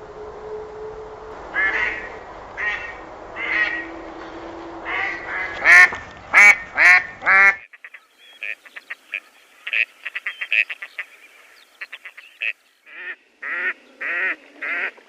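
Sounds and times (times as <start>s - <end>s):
goose honking: 1.5s - 8.9s, 11.8s - 15.0s.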